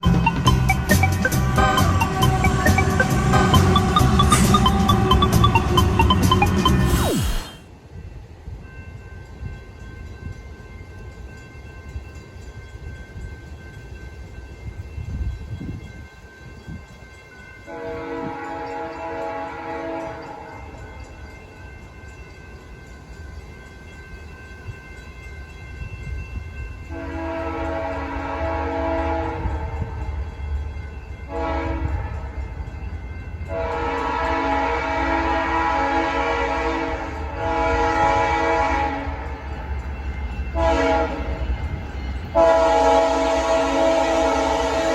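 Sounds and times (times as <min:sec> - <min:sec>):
distant train rumble: 0:00.0 - 0:44.9
locomotive horn blasts: 0:00.2 - 0:06.9, 0:17.7 - 0:20.5, 0:26.9 - 0:30.0, 0:31.3 - 0:32.4, 0:33.5 - 0:39.3, 0:40.6 - 0:41.4, 0:42.4 - 0:44.9.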